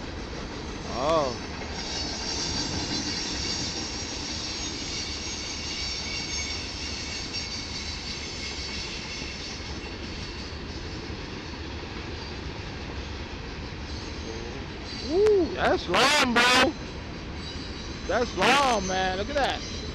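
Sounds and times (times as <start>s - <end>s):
train cars rumbling past: 0.0s - 19.9s
high wheel squeal: 1.8s - 10.5s, 13.9s - 19.9s.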